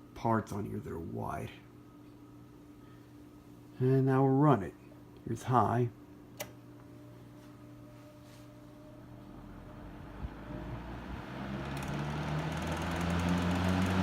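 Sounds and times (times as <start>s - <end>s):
fan motor hum: 0.0s - 14.0s
fan air rushing: 7.8s - 14.0s.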